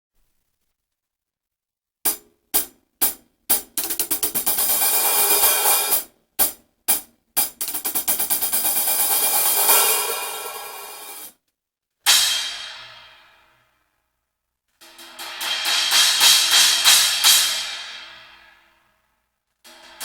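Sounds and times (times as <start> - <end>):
cymbals struck with a stick: 2.1 - 7.0, 14.8 - 18.5, 19.7 - 20.0.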